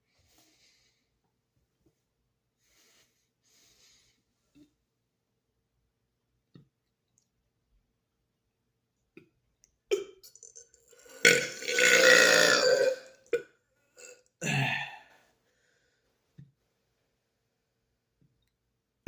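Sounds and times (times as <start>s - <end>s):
man belching: 9.9s - 13.4s, 14.0s - 15.1s.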